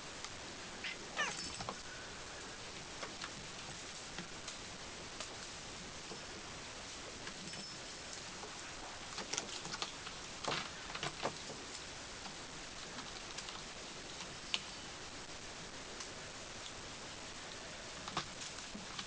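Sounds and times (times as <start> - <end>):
steady hiss: 0.0 - 19.0
kitten paws tapping and scratching: 7.2 - 14.7, 17.5 - 19.0.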